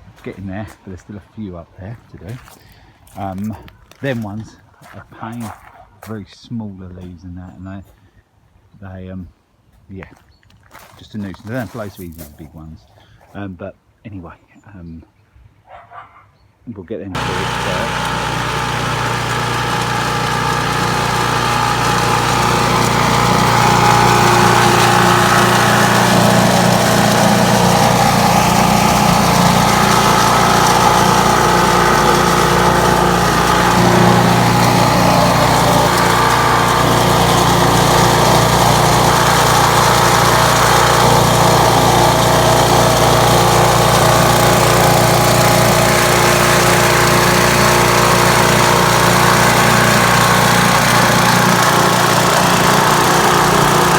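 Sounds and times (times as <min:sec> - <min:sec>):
leaf vacuum engine running: 0:17.2 - 0:53.9.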